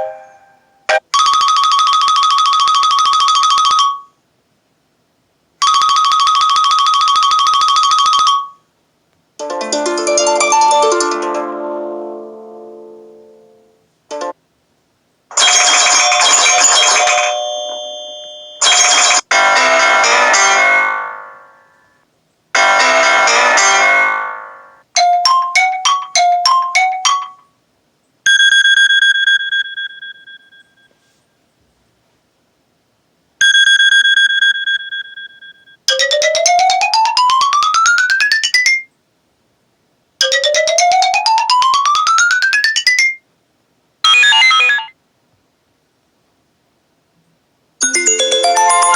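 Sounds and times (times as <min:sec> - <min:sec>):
chiming ringtone: 0:00.0 - 0:00.6, 0:01.2 - 0:04.1, 0:05.6 - 0:08.6, 0:09.6 - 0:12.0, 0:15.4 - 0:21.7, 0:22.6 - 0:27.4, 0:28.3 - 0:30.9, 0:33.4 - 0:38.9, 0:44.1 - 0:44.9, 0:47.8 - 0:48.9
held electronic beep: 0:44.0 - 0:44.9.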